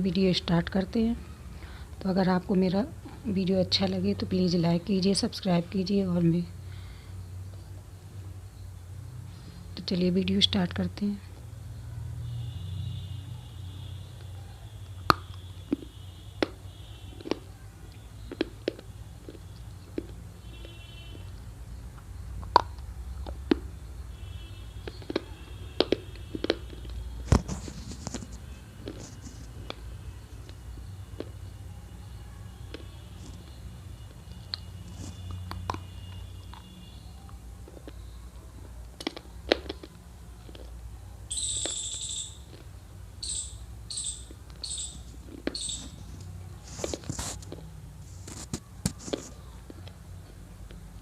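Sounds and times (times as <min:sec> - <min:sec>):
dry clay crunching in mouth: 0:15.0 - 0:23.8, 0:24.8 - 0:31.4, 0:37.3 - 0:40.8, 0:41.4 - 0:43.4, 0:44.0 - 0:51.0
crunching dry clay: 0:24.7 - 0:31.6
high even-pitched chirps: 0:41.3 - 0:42.5, 0:43.2 - 0:46.0.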